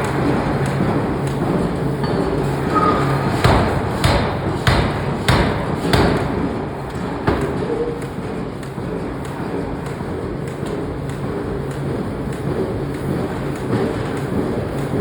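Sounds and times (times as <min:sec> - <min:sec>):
workshop noise: 0:00.0 - 0:15.0
hammer striking hot steel: 0:02.0 - 0:10.0.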